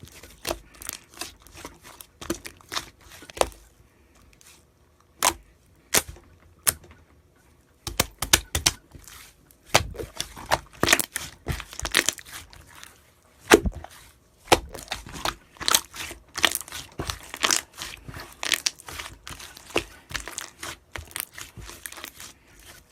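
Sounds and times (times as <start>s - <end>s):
slime squishing and popping: 5.2s - 6.8s, 7.9s - 8.9s, 9.7s - 12.6s, 13.5s - 13.9s, 14.5s - 22.3s.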